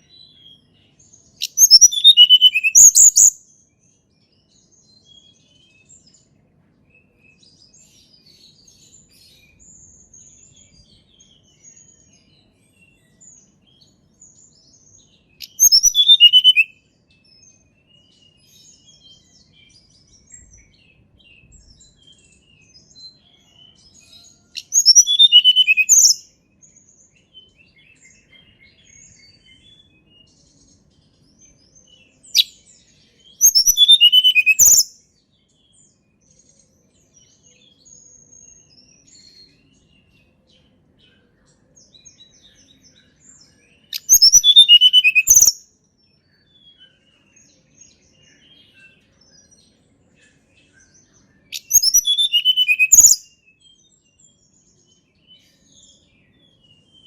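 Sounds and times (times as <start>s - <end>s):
faint bird chirps: 0.0s - 57.0s
songbird whistling falling notes: 44.0s - 45.5s, 51.6s - 53.2s.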